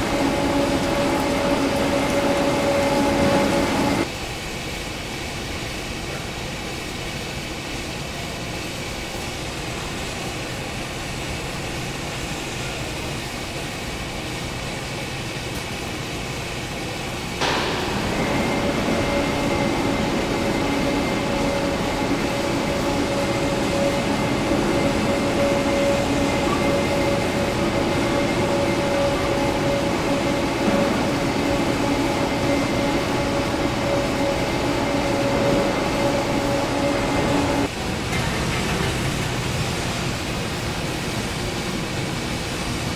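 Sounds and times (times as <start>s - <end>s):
machine whine: 0.0s - 4.1s, 14.6s - 42.6s
factory machinery running: 0.0s - 42.9s.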